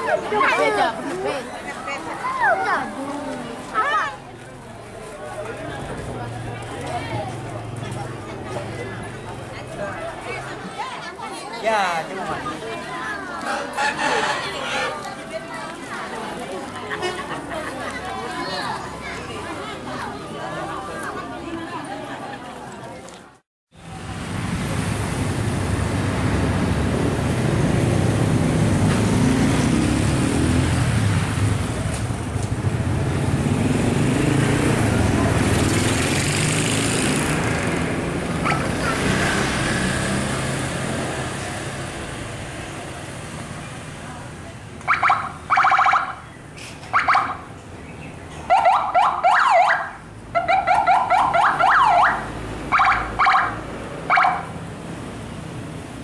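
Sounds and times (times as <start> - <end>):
diesel engines rumbling past: 0.0 - 23.1, 23.8 - 56.0
musical bus horn melodies: 13.5 - 15.1.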